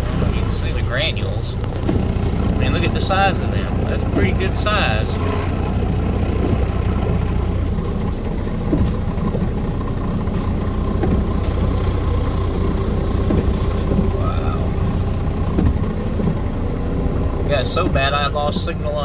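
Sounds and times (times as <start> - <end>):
steady low rumble: 0.0 - 19.0
hailstones ticking: 7.6 - 19.0
heavy rain hissing: 8.0 - 19.0.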